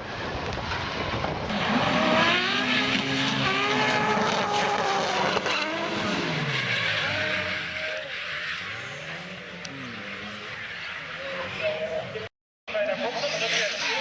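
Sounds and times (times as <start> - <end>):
car engine revving hard: 1.5 - 11.6.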